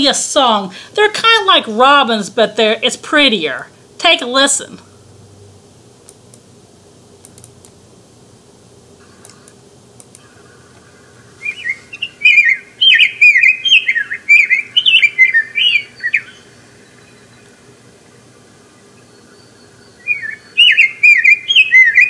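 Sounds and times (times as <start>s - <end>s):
bird singing warbled song: 10.2s - 17.7s, 18.6s - 22.0s.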